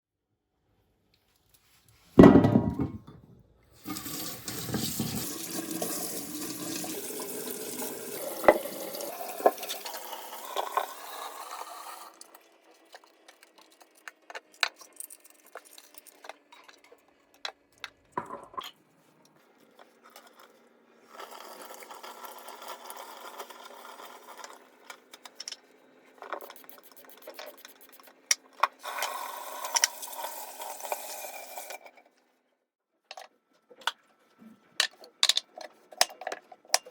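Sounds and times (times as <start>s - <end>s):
knock: 2.2s - 3.1s
kitchen handling clicks and knocks: 2.2s - 3.2s, 18.2s - 18.7s, 34.8s - 36.9s
tap water filling a vessel: 3.8s - 18.7s, 28.8s - 31.9s.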